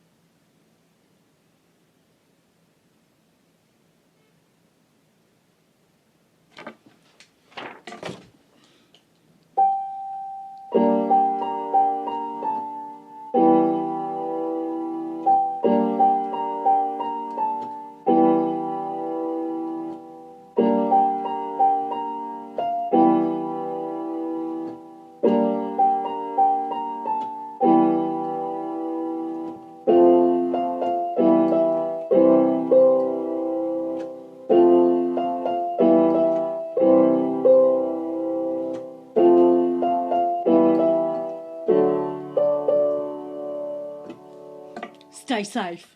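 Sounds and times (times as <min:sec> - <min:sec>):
piano music: 0:09.6 - 0:45.6.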